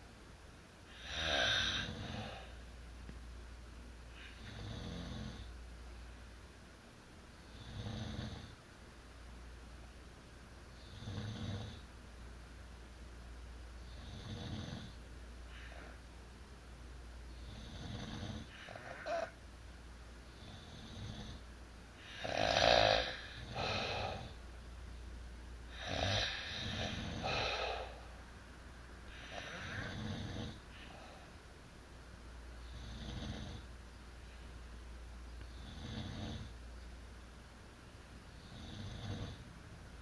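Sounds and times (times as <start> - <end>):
people snoring: 17.4 - 19.3, 22.0 - 24.4, 25.7 - 28.0, 29.1 - 31.0, 32.7 - 33.7, 35.5 - 36.5, 38.4 - 39.4.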